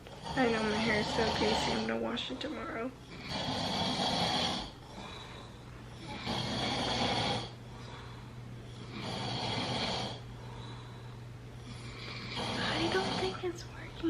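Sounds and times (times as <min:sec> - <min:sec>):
steady low hum: 0:00.0 - 0:14.0
person snoring: 0:00.1 - 0:02.0, 0:03.0 - 0:05.4, 0:06.0 - 0:08.0, 0:08.8 - 0:10.2, 0:11.7 - 0:13.4.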